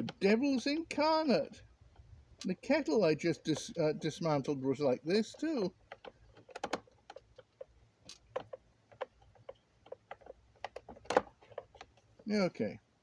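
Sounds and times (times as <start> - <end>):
screwdriver and plastic clicks: 5.2 - 12.3.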